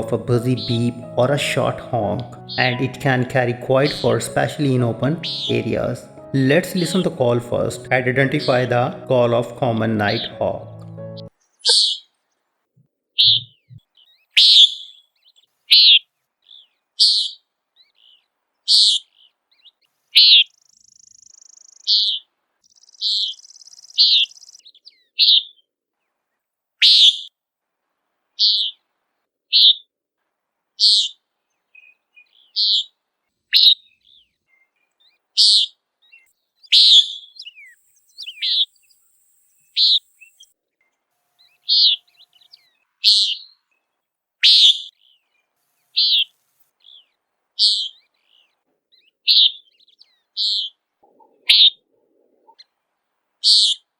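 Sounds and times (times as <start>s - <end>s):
faint high buzzing: 36.8s - 40.5s, 41.2s - 43.0s.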